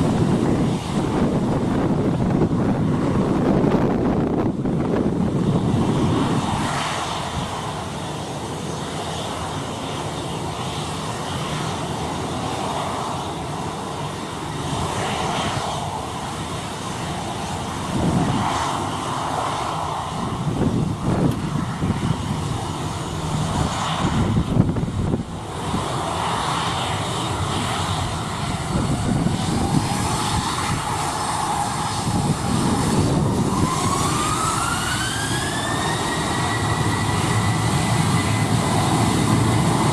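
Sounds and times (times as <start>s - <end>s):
airliner engines running: 0.0s - 39.9s
wind gusting on microphone: 0.0s - 39.9s
whine rising in pitch: 27.7s - 39.9s.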